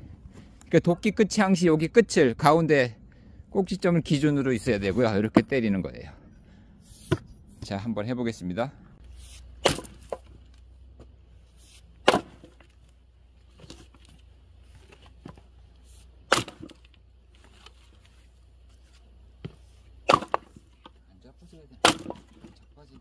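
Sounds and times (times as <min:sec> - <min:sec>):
axe chopping log: 0:09.2 - 0:10.4, 0:12.0 - 0:12.7, 0:16.2 - 0:16.9, 0:19.4 - 0:20.7, 0:21.7 - 0:22.5.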